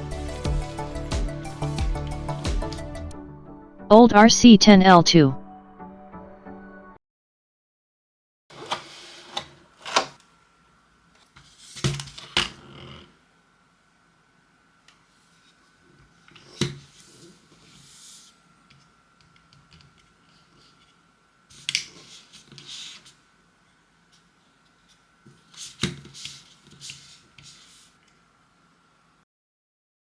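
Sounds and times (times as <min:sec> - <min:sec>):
rustling and scraping: 0:08.5 - 0:10.2, 0:11.2 - 0:13.2, 0:15.1 - 0:18.4, 0:20.2 - 0:23.2, 0:24.1 - 0:28.1.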